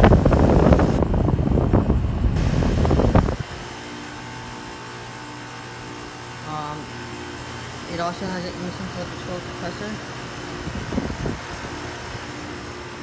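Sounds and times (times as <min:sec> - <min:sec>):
air buffeting microphone: 0:00.0 - 0:03.7, 0:10.5 - 0:11.8
compressor and fan humming: 0:00.0 - 0:13.0.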